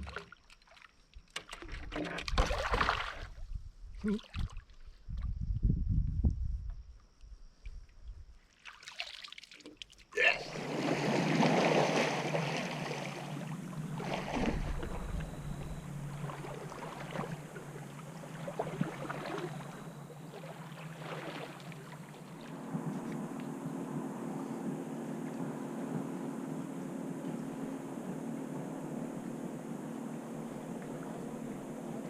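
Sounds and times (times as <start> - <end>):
water sloshing and splashing: 0.0 - 3.4, 4.0 - 5.0, 8.5 - 32.0
steady low drone: 11.4 - 32.0.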